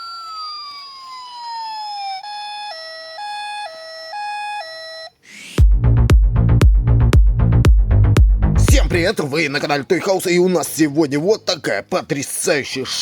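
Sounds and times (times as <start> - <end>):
toy electronic siren: 0.0 - 5.6.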